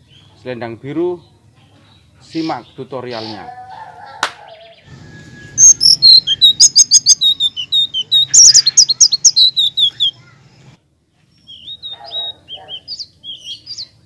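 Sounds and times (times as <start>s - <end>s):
songbird chirping and whistling: 3.2s - 10.2s, 11.3s - 14.0s.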